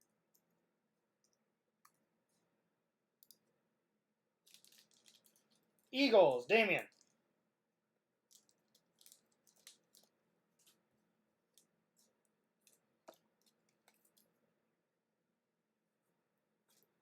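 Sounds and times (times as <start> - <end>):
trading cards clicking and rustling: 4.5 - 5.7.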